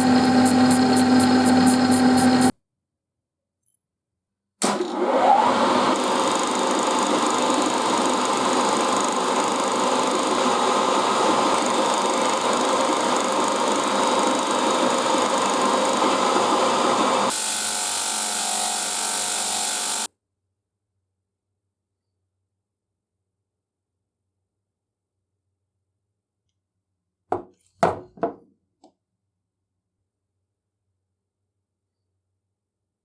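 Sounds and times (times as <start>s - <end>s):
hissy thin machine sound: 0.0s - 2.5s
power tool whining: 0.0s - 2.5s, 4.6s - 20.1s.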